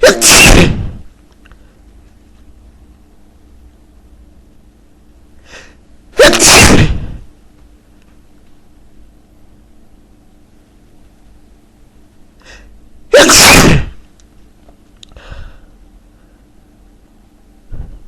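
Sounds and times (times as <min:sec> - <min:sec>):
man sneezing: 0:00.0 - 0:01.0, 0:05.5 - 0:07.2, 0:13.1 - 0:14.0
man breathing in: 0:12.4 - 0:12.7, 0:15.1 - 0:16.4.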